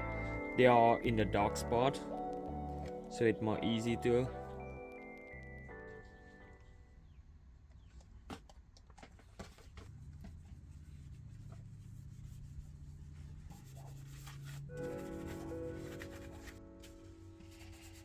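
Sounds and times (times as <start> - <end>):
background music: 0.0 - 7.1, 14.5 - 18.0.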